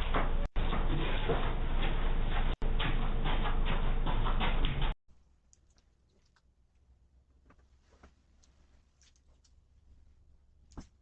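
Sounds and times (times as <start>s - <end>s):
faint low hum: 5.1s - 11.0s.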